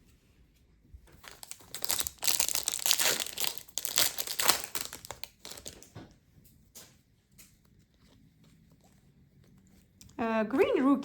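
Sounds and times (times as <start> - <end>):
plastic wrapper tearing and crinkling: 1.2 - 6.0.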